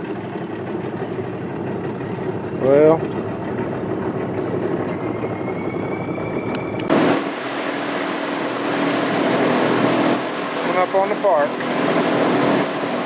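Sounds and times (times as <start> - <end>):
outboard motor running: 0.0 - 6.3, 6.9 - 13.0
steady hum: 6.9 - 13.0.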